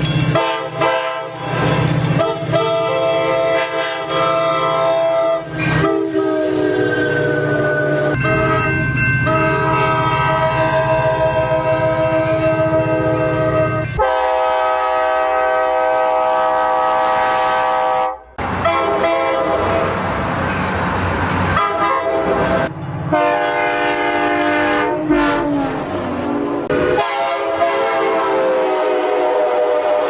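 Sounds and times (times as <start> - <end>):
passing train rumble and clatter: 0.0 - 30.0
train horn: 0.3 - 1.4, 2.2 - 20.0, 21.5 - 25.8, 26.7 - 30.0.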